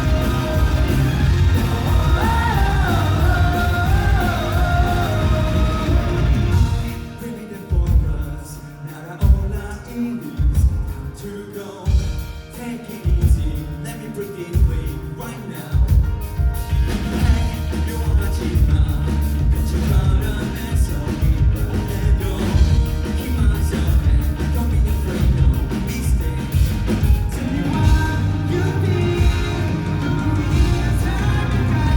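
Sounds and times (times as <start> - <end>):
rock band playing: 0.0 - 31.9.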